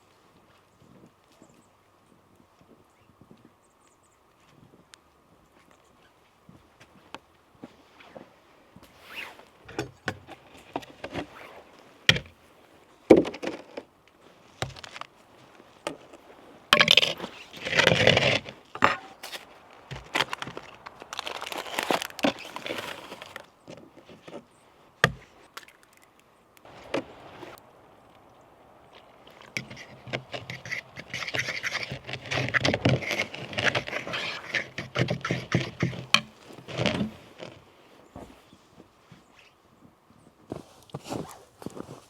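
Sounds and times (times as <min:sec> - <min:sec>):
scraping and rustling: 0:06.9 - 0:27.6, 0:28.8 - 0:39.6, 0:40.2 - 0:42.0.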